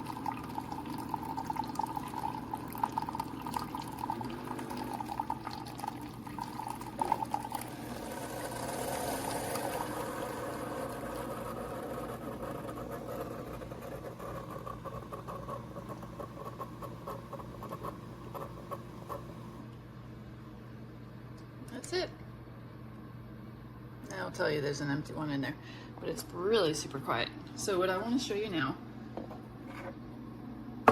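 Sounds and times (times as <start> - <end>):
coffee trickling into mug: 0.0 - 19.3
coffee maker running: 0.0 - 19.7.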